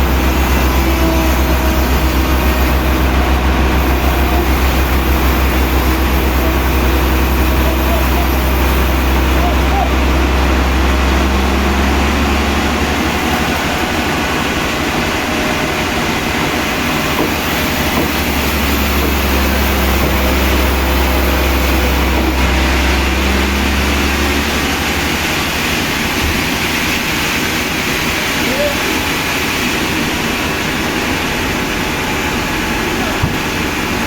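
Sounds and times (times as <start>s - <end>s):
heavy engine droning: 0.0s - 34.0s.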